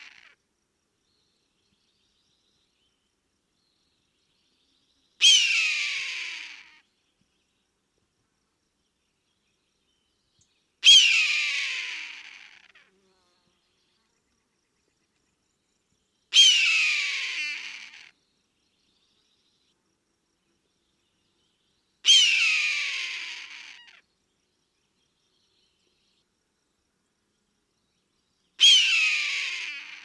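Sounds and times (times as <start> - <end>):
hawk screaming: 22.1 - 24.0, 28.6 - 30.0.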